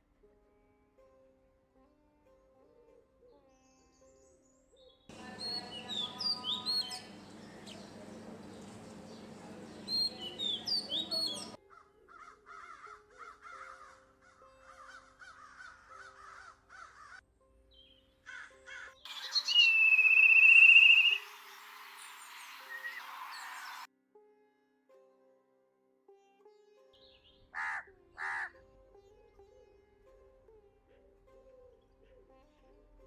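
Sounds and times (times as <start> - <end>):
soft background music: 0.0 - 19.0
high bird call: 5.1 - 11.6, 19.1 - 23.9
soft sustained music notes: 5.1 - 11.6
crows cawing: 5.1 - 17.2, 18.3 - 19.3, 27.6 - 28.5.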